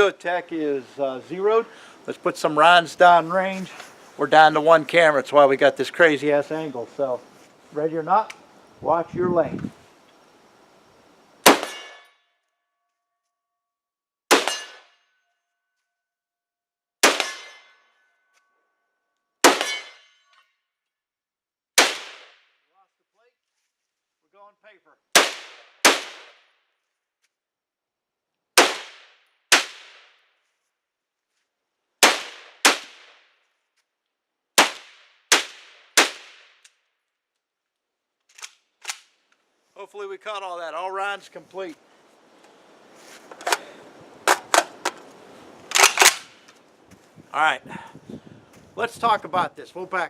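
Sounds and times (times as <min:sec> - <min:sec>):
rifle shots: 0:11.4 - 0:12.0, 0:14.3 - 0:14.8, 0:17.0 - 0:17.6, 0:19.4 - 0:19.9, 0:21.8 - 0:22.3, 0:25.1 - 0:26.4, 0:28.6 - 0:30.1, 0:32.0 - 0:33.1, 0:34.6 - 0:36.5, 0:45.7 - 0:46.3
steel target ringing: 0:11.6 - 0:12.2, 0:14.4 - 0:15.0, 0:19.6 - 0:20.3.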